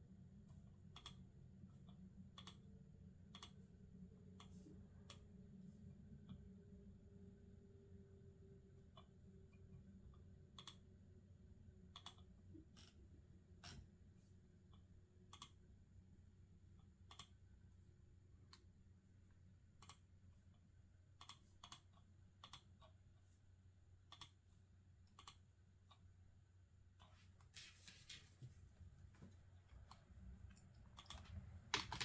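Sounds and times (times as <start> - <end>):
faint low hum: 0.0 - 32.0
keyboard and mouse clicks: 0.9 - 1.2, 3.3 - 3.6, 15.3 - 15.6, 17.1 - 17.4, 19.8 - 20.0, 21.2 - 22.8, 24.1 - 24.4, 25.0 - 25.5, 29.8 - 32.0.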